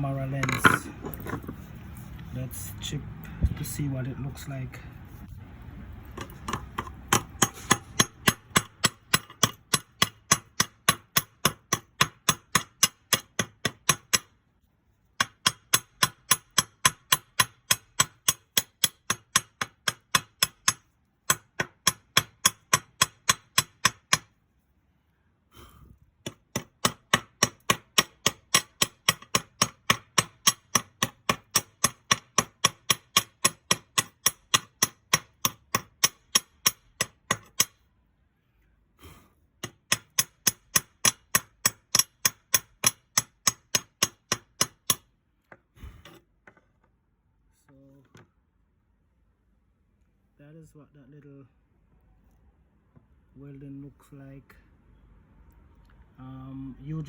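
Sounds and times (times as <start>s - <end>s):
chipping hammer striking metal: 6.2s - 14.3s, 26.3s - 37.8s.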